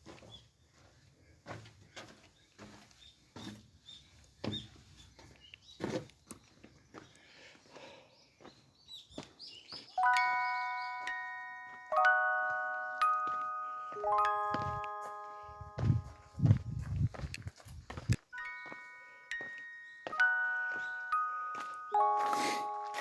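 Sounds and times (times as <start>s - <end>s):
footsteps on a trail: 0.0s - 9.9s, 12.4s - 23.0s
bell-like chime ringing: 10.0s - 16.8s, 18.4s - 23.0s.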